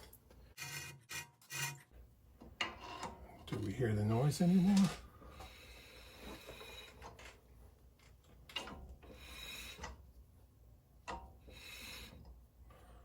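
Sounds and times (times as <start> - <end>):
metal scraping on brake rotor: 2.6 - 3.3.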